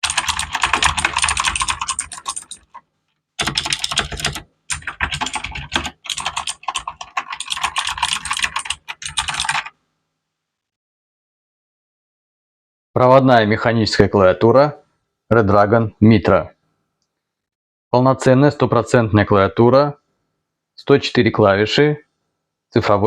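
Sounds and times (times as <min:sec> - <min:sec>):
mechanical keyboard typing: 0:00.0 - 0:09.8.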